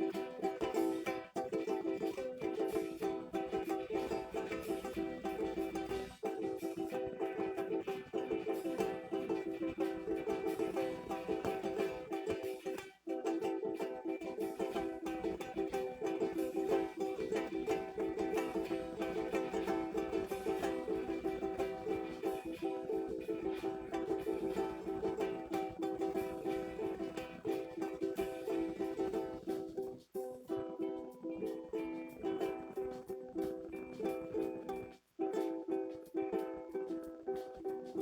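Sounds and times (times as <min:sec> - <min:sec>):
acoustic guitar strumming: 0:00.0 - 0:29.7.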